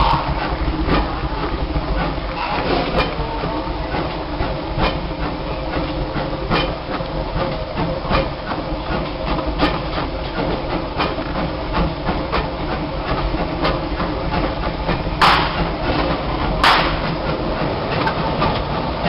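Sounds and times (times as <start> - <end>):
train rumbling along track: 0.0 - 19.0
wheels clicking over rail joints: 0.0 - 19.0.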